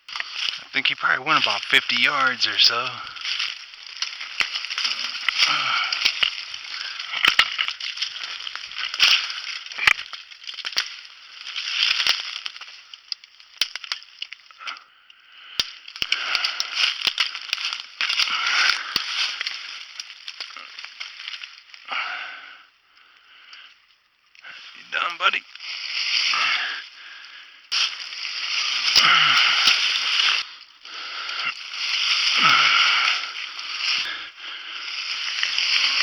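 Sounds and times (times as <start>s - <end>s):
footsteps crunching through leaves: 0.0s - 12.9s, 16.3s - 21.8s, 25.4s - 36.0s
twigs snapping: 0.0s - 24.8s, 25.4s - 36.0s.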